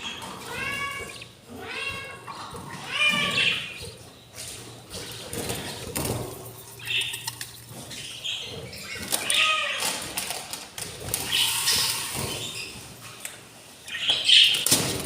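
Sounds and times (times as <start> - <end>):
budgerigars chirping: 0.0 - 1.3, 2.2 - 5.8
birds tapping and knocking: 1.9 - 11.4, 14.1 - 15.0.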